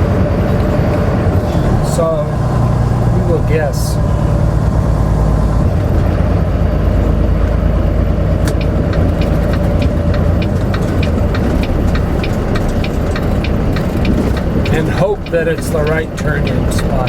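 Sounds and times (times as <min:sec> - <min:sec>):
diesel truck engine rumbling: 0:00.0 - 0:17.0
turn signal ticking: 0:08.2 - 0:17.0.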